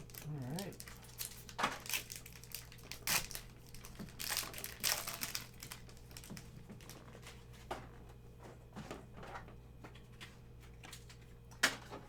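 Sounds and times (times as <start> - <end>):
plastic wrappers crinkling: 0.0 - 7.0.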